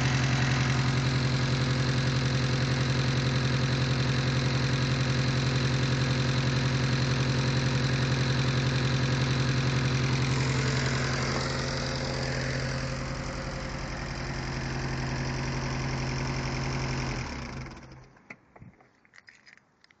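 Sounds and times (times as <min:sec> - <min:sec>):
car engine idling with knock: 0:00.0 - 0:18.3.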